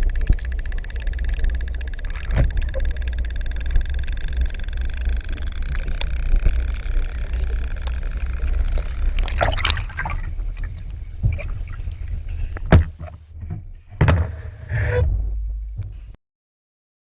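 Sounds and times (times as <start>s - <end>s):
sharp clicks: 0.0s - 10.3s
water splashing and sloshing: 0.0s - 15.8s
low underwater rumble: 0.0s - 16.2s.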